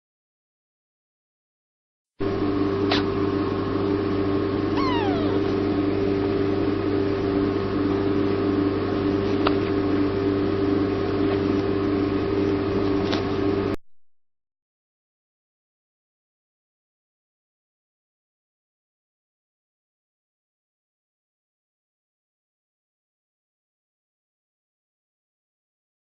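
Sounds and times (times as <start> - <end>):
steady mechanical hum: 2.2 - 13.8
short falling squeak: 4.8 - 5.6.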